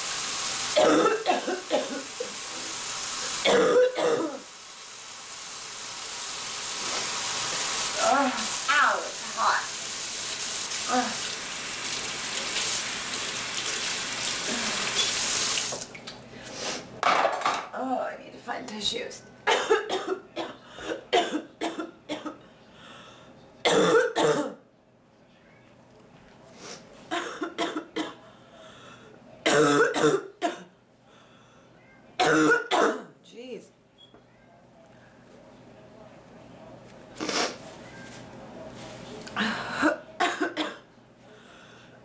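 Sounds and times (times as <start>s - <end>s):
woman coughing: 0.8s - 2.1s, 3.5s - 4.4s, 19.5s - 22.4s, 23.7s - 24.6s, 27.1s - 28.2s, 29.5s - 30.7s, 32.2s - 33.2s, 39.4s - 40.8s.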